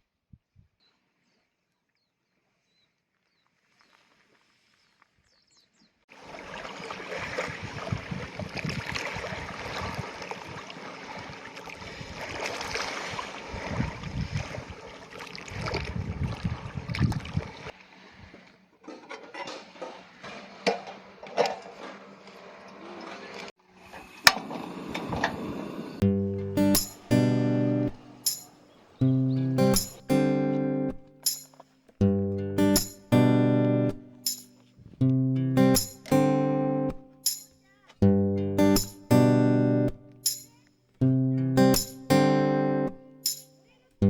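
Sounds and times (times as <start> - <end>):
sea lapping at shore: 6.1 - 31.4.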